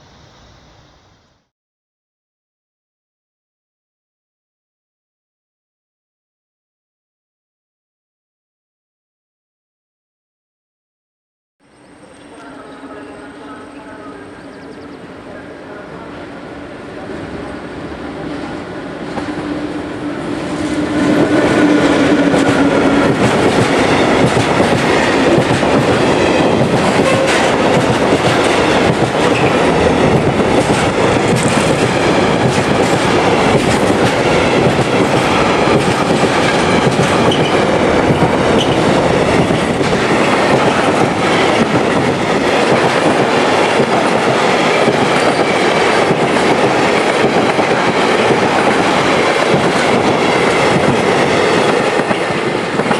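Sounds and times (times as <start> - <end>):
freight train wheels clattering: 18.3 - 52.9.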